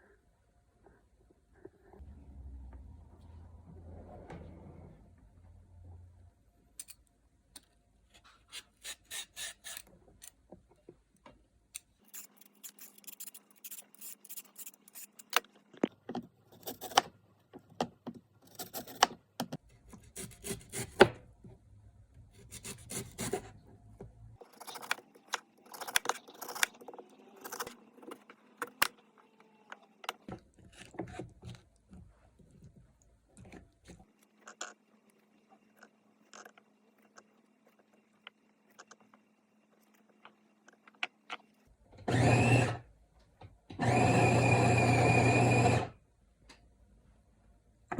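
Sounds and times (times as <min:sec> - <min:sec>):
food cut and scraped on cutting board: 0:08.2 - 0:09.9, 0:19.8 - 0:21.2, 0:22.3 - 0:23.5.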